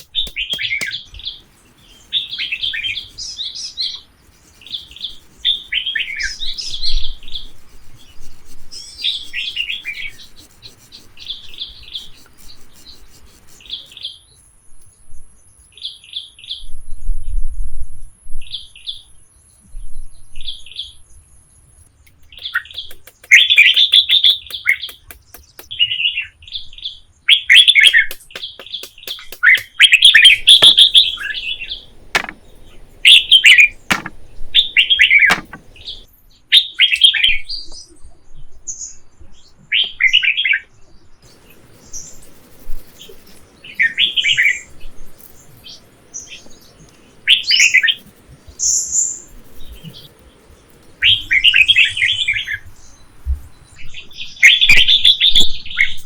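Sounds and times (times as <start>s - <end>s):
small birds chirping: 0.0s - 14.5s, 22.1s - 25.8s, 27.4s - 36.1s, 41.2s - 56.0s
sharp knocks: 27.9s - 29.8s, 30.4s - 31.0s, 31.6s - 36.0s.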